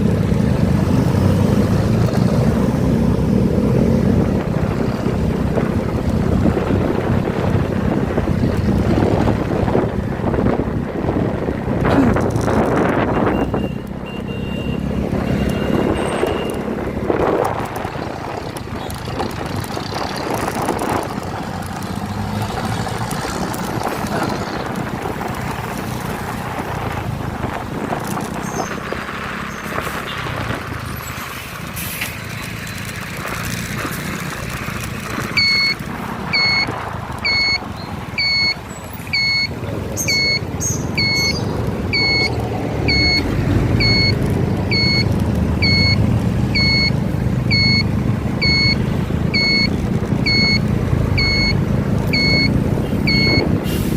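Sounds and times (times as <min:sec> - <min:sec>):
vehicle engine and road noise: 0:00.0 - 0:53.9
short high electronic beeps: 0:37.3 - 0:37.6, 0:38.2 - 0:43.2, 0:43.8 - 0:46.0, 0:46.6 - 0:48.8, 0:50.3 - 0:50.6, 0:51.2 - 0:51.6, 0:53.1 - 0:53.4.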